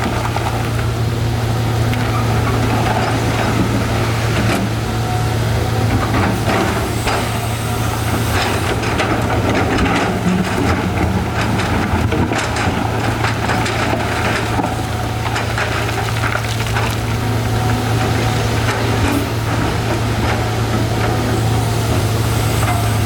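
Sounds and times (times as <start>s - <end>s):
excavator diesel engine running: 0.0s - 23.0s
rocks knocking and scraping: 8.8s - 18.9s.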